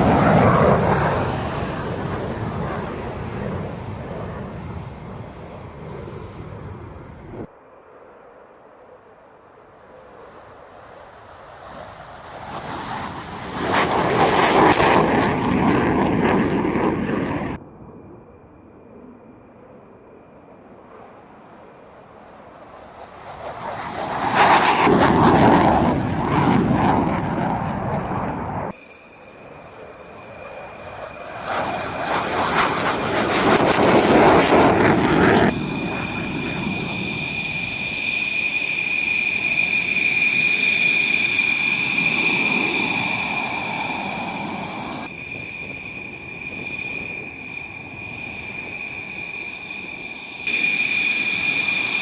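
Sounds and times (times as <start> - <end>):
fighter jet taking off: 0.0 - 52.0.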